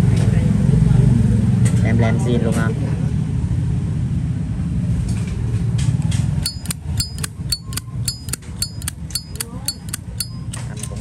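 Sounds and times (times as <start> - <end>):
lighter lid clicking open and shut: 6.4 - 10.6.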